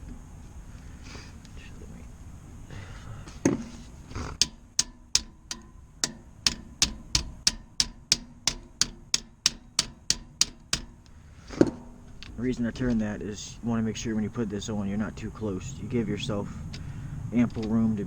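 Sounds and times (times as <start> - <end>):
knocks: 4.4 - 13.1
ratchet wrench clicking: 4.4 - 13.2, 15.9 - 18.0.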